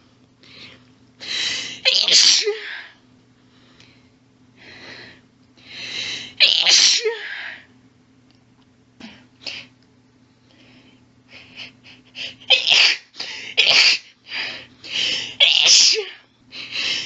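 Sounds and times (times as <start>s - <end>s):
woman gasping breaths: 0.4s - 1.8s, 2.6s - 6.4s, 14.2s - 15.4s, 16.5s - 17.0s
woman sneezing: 1.8s - 2.8s, 6.4s - 7.4s, 12.4s - 14.1s, 15.3s - 16.2s.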